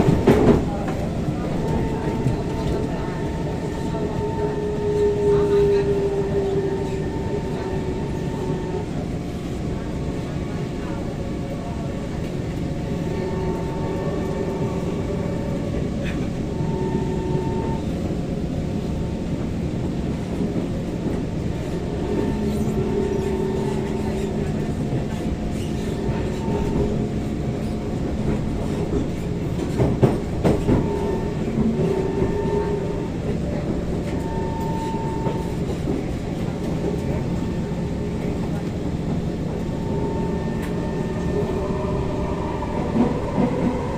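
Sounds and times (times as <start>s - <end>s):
train wheel clacks: 0.0s - 3.4s, 20.4s - 37.4s
train wheels rumbling on track: 0.0s - 43.9s
whining tones: 39.7s - 43.9s.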